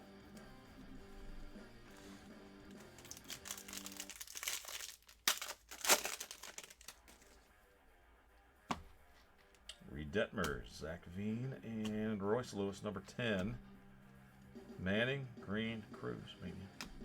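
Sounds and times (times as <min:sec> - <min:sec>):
wrapper crinkling and tearing: 0:02.7 - 0:07.4.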